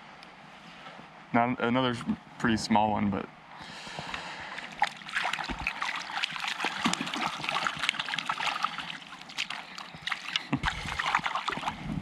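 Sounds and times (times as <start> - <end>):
water splashing and trickling: 4.5 - 12.0.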